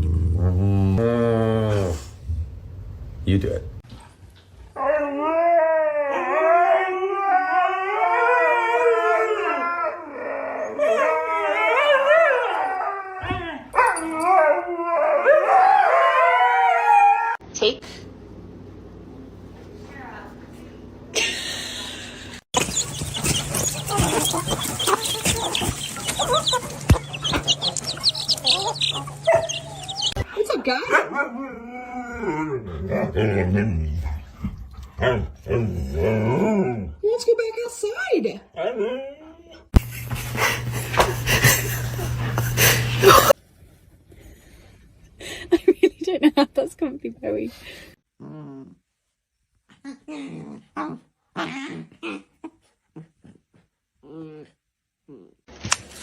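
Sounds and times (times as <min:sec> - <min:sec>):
dog howling: 0:04.8 - 0:17.4, 0:22.6 - 0:30.2
birds chirping: 0:22.5 - 0:30.2.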